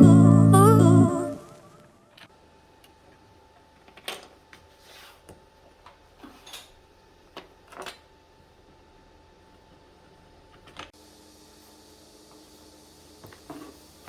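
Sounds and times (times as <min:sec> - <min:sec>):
faint steady hum: 0:00.0 - 0:04.6.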